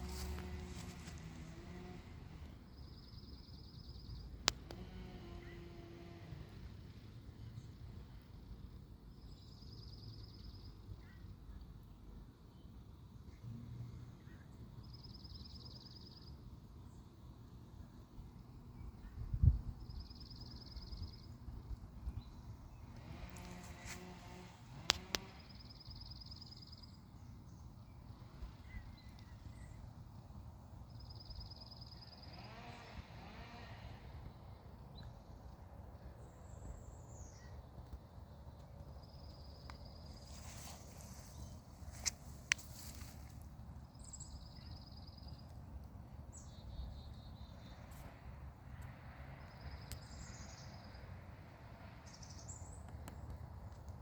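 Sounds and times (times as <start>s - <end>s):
songbird trilling song: 18.8s - 23.0s, 24.9s - 30.0s.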